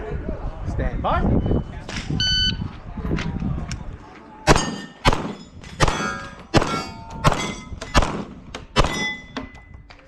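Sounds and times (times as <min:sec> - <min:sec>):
steel target ringing: 0:04.5 - 0:08.0, 0:08.8 - 0:09.4
pistol shots: 0:04.5 - 0:09.2.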